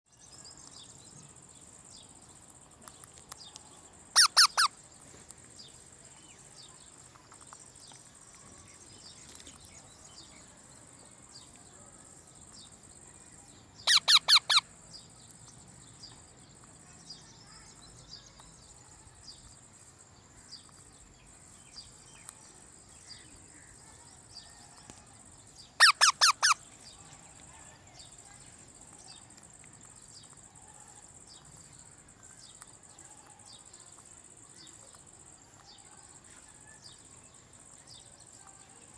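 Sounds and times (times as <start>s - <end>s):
faint chirps: 0.1s - 38.9s
parrot shrill calls: 4.1s - 4.8s, 13.8s - 14.7s, 25.8s - 26.6s.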